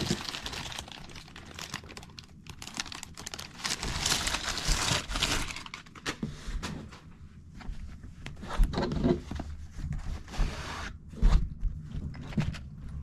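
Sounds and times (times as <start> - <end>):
packaging crinkling and rustling: 0.0 - 6.4.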